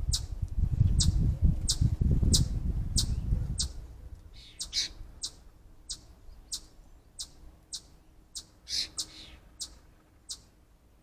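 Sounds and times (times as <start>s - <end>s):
bird calling: 2.4s - 10.5s.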